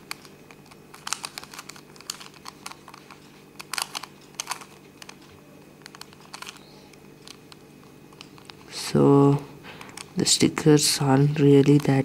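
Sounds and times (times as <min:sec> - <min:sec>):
plastic parts clicking and crinkling: 0:00.0 - 0:08.8, 0:09.7 - 0:10.2, 0:11.5 - 0:12.0
faint steady hum: 0:00.0 - 0:12.0.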